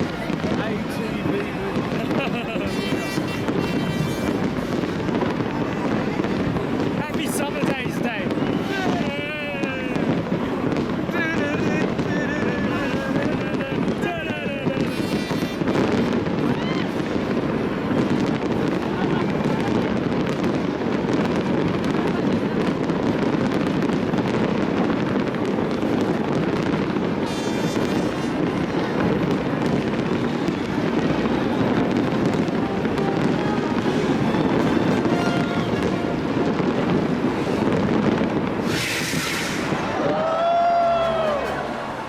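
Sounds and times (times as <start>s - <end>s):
fireworks popping and crackling: 0.0s - 42.0s
whistling firework shell: 14.7s - 17.0s, 38.6s - 41.9s
bright hissing crackle: 35.9s - 41.3s.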